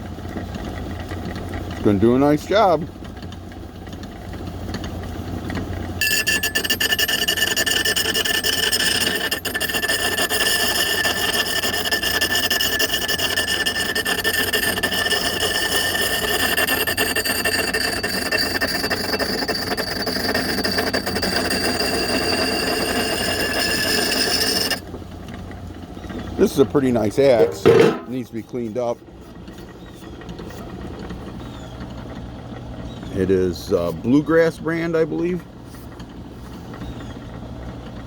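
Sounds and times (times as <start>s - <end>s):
axe grinding on grinding wheel: 6.0s - 25.0s, 26.1s - 31.2s
electric motor hum: 6.0s - 25.0s.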